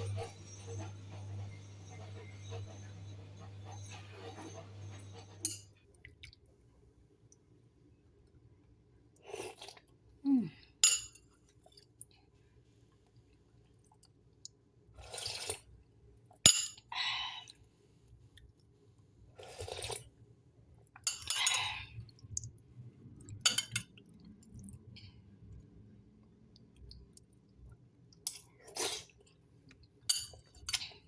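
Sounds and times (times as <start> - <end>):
sipping and chewing soup: 19.4 - 20.1, 20.9 - 30.0.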